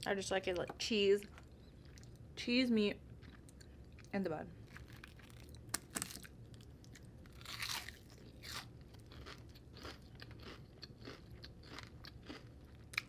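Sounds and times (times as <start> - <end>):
person chewing crunchy food: 3.1 - 13.0.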